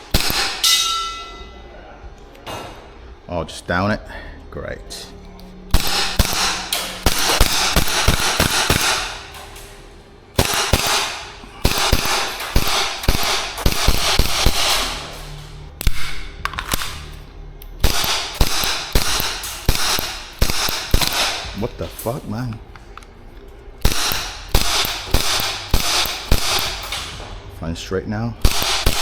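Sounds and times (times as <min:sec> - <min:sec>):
airsoft gun firing rapidly: 0:00.0 - 0:00.6, 0:05.7 - 0:09.2, 0:10.4 - 0:15.0, 0:17.8 - 0:21.5, 0:23.8 - 0:27.0, 0:28.4 - 0:29.0.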